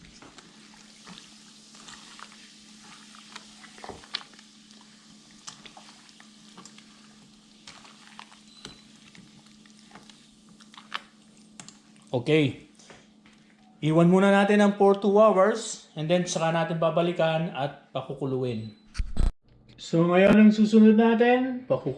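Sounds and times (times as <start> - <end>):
wet liquid mixing sounds: 0.0 - 13.8.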